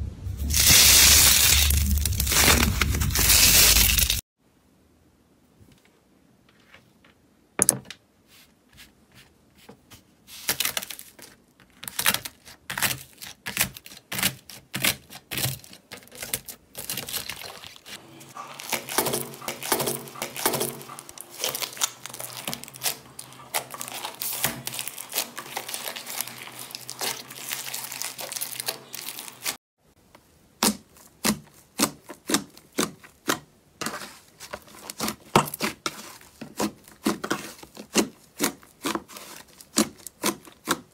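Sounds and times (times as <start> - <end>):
slime crackling and popping: 21.2 - 29.6.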